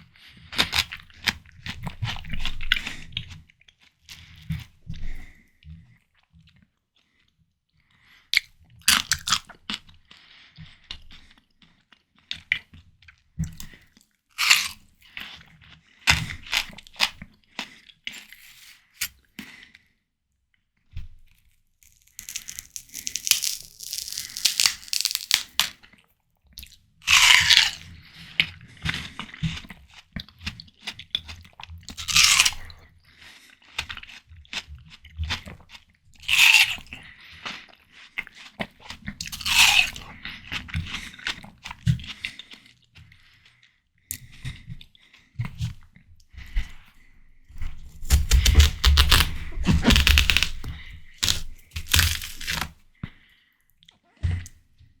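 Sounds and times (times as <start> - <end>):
crunching watermelon bites: 8.4 - 9.8, 14.4 - 15.4, 16.1 - 17.3, 21.4 - 25.9, 26.6 - 27.9, 30.5 - 32.8, 33.8 - 37.6, 38.2 - 42.4, 47.6 - 52.8
juicy chewing: 8.4 - 19.1, 21.3 - 25.9, 26.6 - 53.2.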